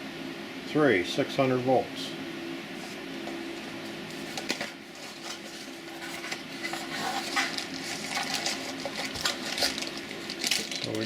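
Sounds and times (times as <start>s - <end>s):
packaging clicks and rustles: 4.2s - 11.0s.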